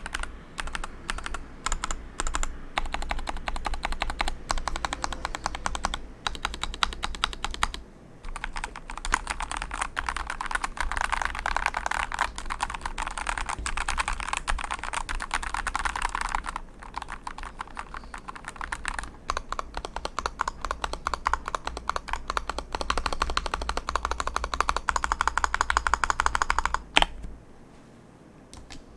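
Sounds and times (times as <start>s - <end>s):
mechanical keyboard typing: 0.0s - 27.3s.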